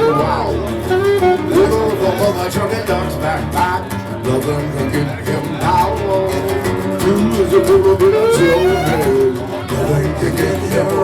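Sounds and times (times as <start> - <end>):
wavering lead melody: 0.0 - 2.2, 7.7 - 9.5
plucked string instruments: 0.0 - 11.0.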